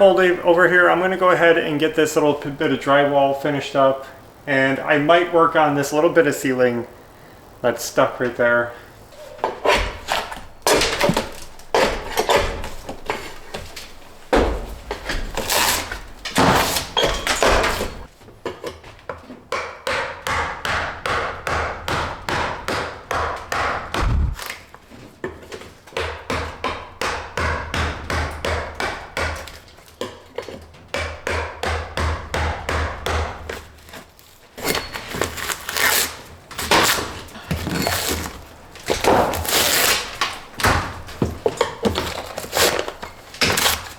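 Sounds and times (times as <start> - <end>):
hammering on wood: 9.4 - 18.1, 19.5 - 24.5, 25.9 - 33.7
heavier knocks and thuds: 23.6 - 24.5.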